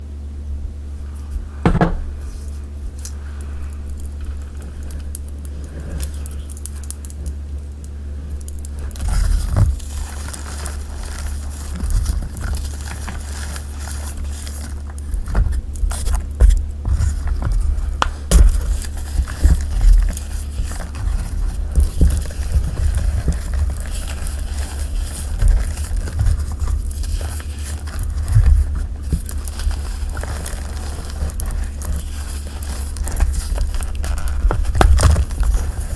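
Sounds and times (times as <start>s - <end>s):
steady low hum: 0.0s - 35.9s
chalk crunching by hand: 8.8s - 35.9s.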